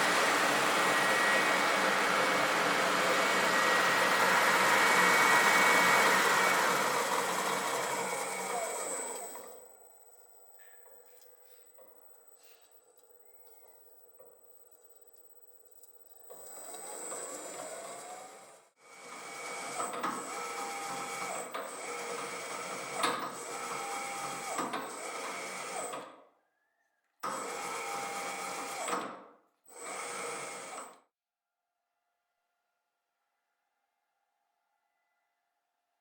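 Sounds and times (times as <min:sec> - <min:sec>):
drill press drilling into metal: 0:00.0 - 0:09.8, 0:16.1 - 0:26.1.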